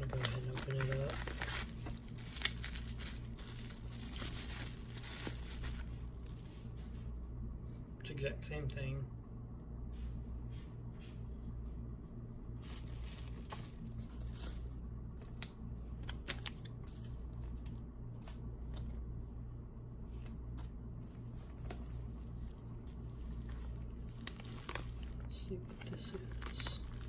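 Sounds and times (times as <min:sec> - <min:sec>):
packaging rustling and tearing: 0:00.0 - 0:06.7, 0:12.6 - 0:14.7, 0:23.5 - 0:27.0
steady low hum: 0:00.0 - 0:27.0.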